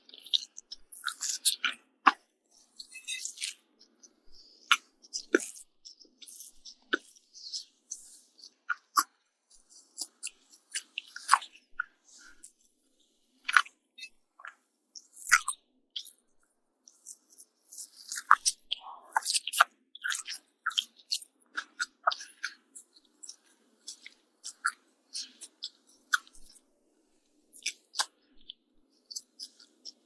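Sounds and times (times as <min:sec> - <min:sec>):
wet chewing mouth clicks: 0:00.1 - 0:02.2, 0:15.3 - 0:16.2, 0:17.0 - 0:26.6, 0:27.6 - 0:30.0.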